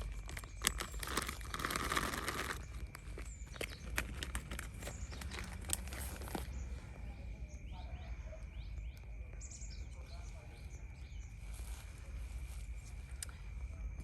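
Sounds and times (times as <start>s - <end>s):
light crinkling and clicking: 0.0s - 6.8s
faint bird chirps: 0.0s - 14.0s.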